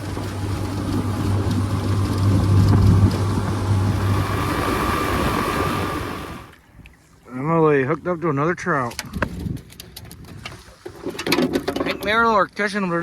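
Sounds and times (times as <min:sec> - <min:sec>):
outboard motor running: 0:00.0 - 0:06.6.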